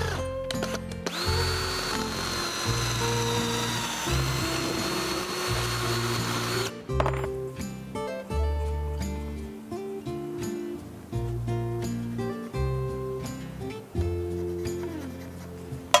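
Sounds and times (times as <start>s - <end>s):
power drill whining: 0.0s - 6.8s
background music: 0.0s - 16.0s.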